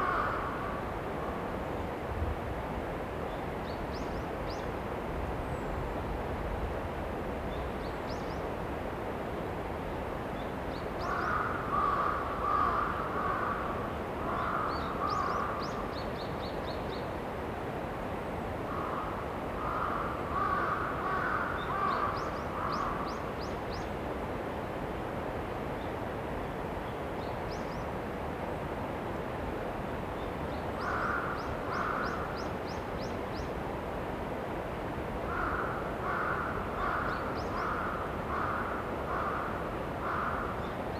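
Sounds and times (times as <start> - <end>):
crows cawing: 0.0 - 0.6, 11.0 - 15.6, 18.7 - 23.1, 30.8 - 32.3, 35.3 - 40.6.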